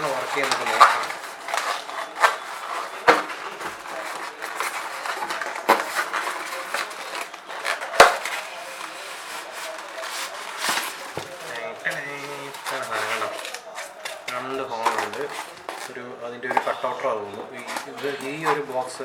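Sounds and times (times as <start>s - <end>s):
hard plastic clacks: 0.0s - 8.5s
rustling: 0.0s - 19.0s.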